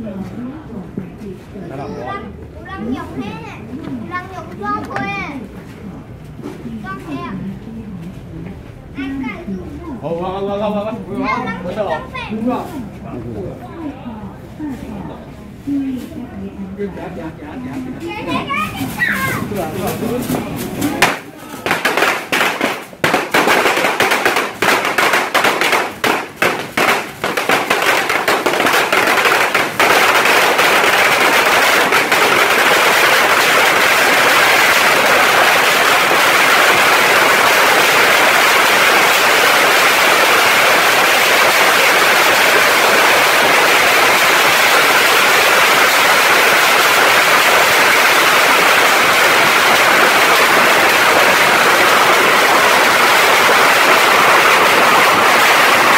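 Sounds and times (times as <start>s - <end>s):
bottle rockets crackling and whooshing: 18.8s - 55.9s.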